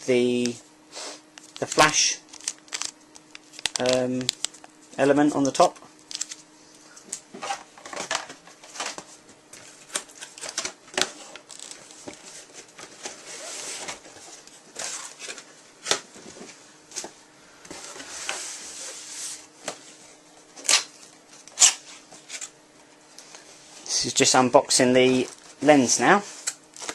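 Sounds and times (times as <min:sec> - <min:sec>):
cardboard and plastic rustling: 0:01.4 - 0:04.8, 0:07.3 - 0:20.0.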